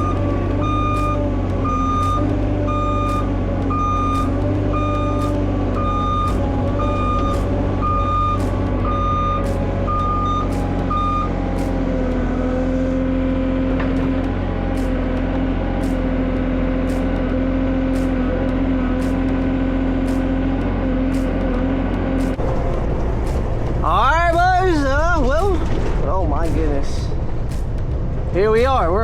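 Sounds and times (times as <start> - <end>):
truck reverse warning beeper: 0.0 - 12.2
truck engine running: 0.0 - 29.0.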